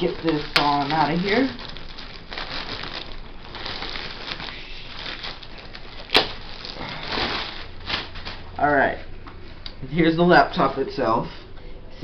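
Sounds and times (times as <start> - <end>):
packaging rustling and scraping: 0.0 - 8.5.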